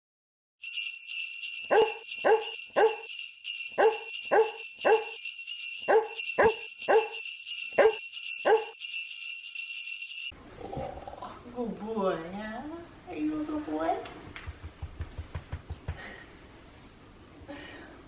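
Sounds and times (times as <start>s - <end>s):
sleigh bells jingling: 0.6s - 10.3s
dog barking: 1.7s - 3.1s, 3.8s - 5.2s, 5.9s - 7.2s, 7.8s - 8.8s.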